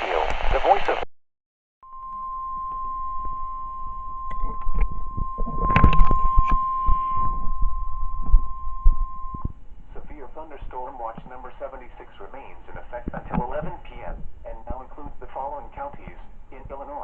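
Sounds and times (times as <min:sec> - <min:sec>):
high-pitched alarm beep: 0:01.8 - 0:09.6.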